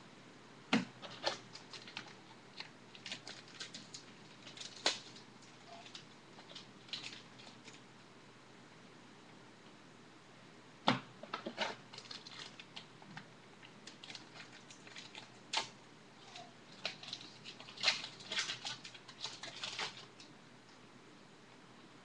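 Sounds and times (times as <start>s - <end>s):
card packs rustling: 1.0s - 7.8s, 11.2s - 12.9s, 13.8s - 20.3s.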